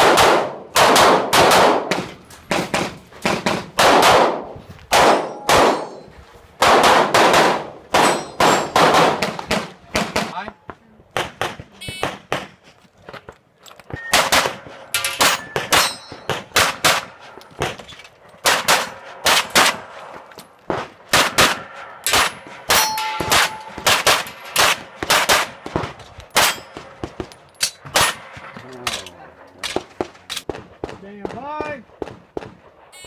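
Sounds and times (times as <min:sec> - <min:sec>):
pistol shots: 0:00.0 - 0:06.0, 0:06.6 - 0:10.3, 0:14.0 - 0:17.8, 0:18.4 - 0:20.0, 0:20.7 - 0:28.6
steel targets ringing: 0:05.2 - 0:06.1, 0:08.0 - 0:08.8, 0:14.0 - 0:16.5, 0:22.3 - 0:24.6.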